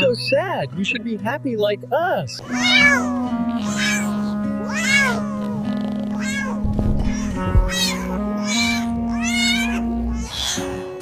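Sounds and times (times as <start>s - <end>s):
kittens meowing: 2.4s - 11.0s.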